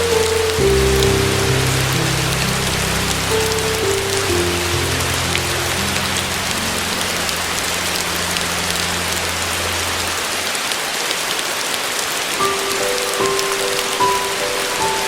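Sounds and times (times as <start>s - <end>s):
piano notes: 0.0s - 15.0s
steady rain hiss: 0.0s - 15.0s.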